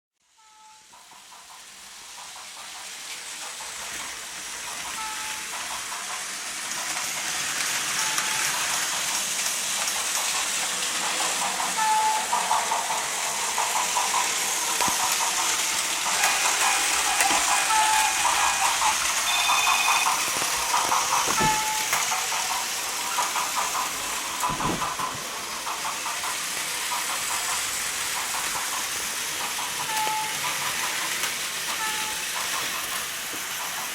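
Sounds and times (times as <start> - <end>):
toy train whirring rattle: 0.6 - 33.9
short electronic beeps: 19.3 - 20.2.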